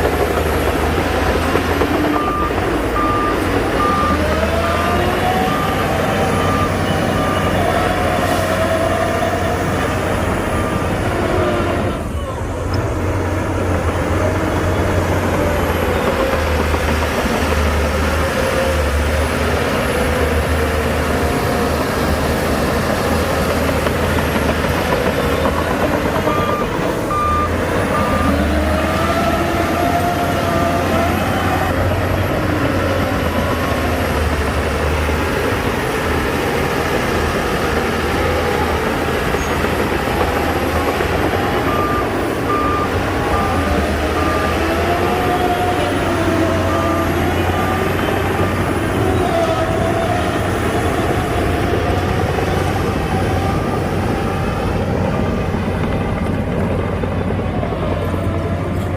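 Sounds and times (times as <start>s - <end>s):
bulldozer diesel engine revving: 0.0s - 58.9s
reversing alarm beeping: 1.1s - 12.5s, 24.6s - 32.3s, 40.1s - 55.2s.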